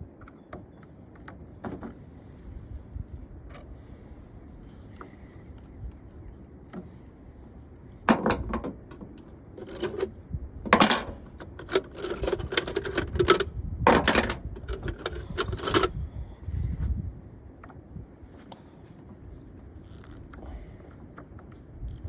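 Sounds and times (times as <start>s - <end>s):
metal tools clinking: 9.6s - 10.1s, 10.7s - 15.9s.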